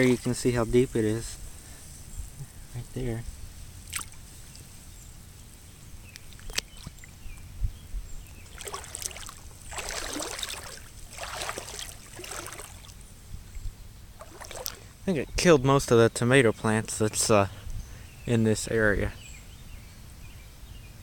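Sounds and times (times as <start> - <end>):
boots splashing through water: 3.9 - 4.3, 8.4 - 13.0, 14.2 - 14.9.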